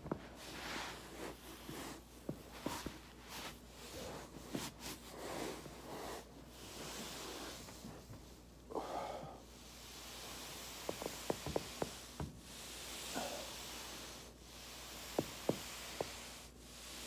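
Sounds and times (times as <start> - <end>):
person breathing heavily: 8.7 - 10.3, 12.8 - 14.2.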